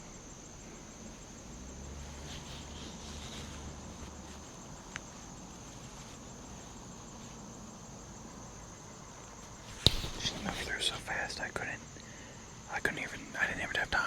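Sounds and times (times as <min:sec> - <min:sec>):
high-pitched insect chorus: 0:00.0 - 0:14.0
small click: 0:09.7 - 0:10.4.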